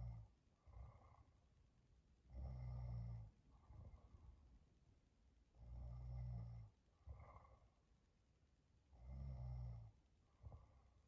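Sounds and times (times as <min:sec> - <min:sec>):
soft breath: 0:00.6 - 0:01.4, 0:10.2 - 0:11.0.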